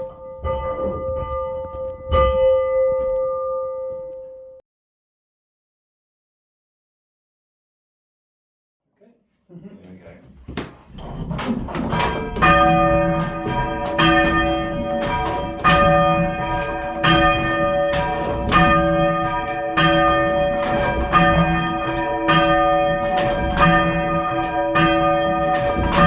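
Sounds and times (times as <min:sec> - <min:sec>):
church bells ringing: 0:00.0 - 0:04.6, 0:11.0 - 0:26.0.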